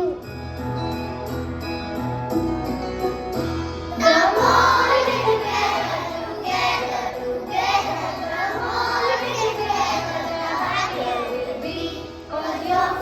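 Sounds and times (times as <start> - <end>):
instrumental backing music: 0.0 - 13.0
children singing: 4.0 - 13.0.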